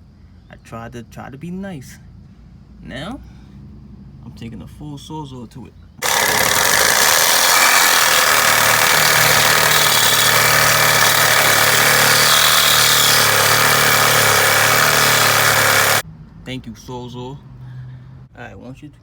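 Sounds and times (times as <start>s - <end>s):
reciprocating saw cutting metal: 6.0s - 16.0s.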